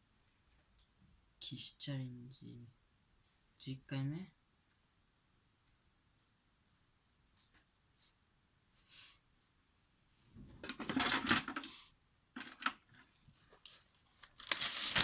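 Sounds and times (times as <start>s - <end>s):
paper tissue rustling: 13.4s - 15.0s.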